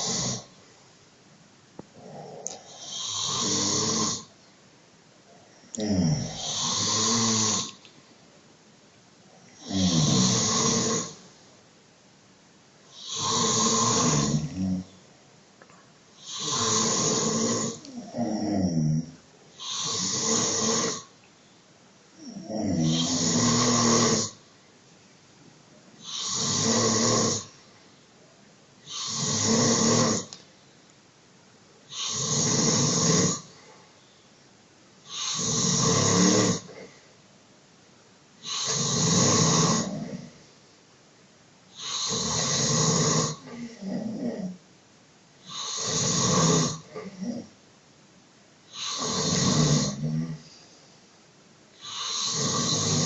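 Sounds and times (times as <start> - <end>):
man snoring loudly: 0.0 - 0.5, 2.0 - 4.3, 5.8 - 7.8, 9.6 - 11.3, 12.9 - 14.9, 16.2 - 21.1, 22.2 - 24.4, 26.0 - 27.5, 28.8 - 30.3, 31.9 - 33.5, 35.0 - 36.9, 38.4 - 40.3, 41.7 - 44.6, 45.4 - 47.5, 48.7 - 50.4, 51.8 - 53.0.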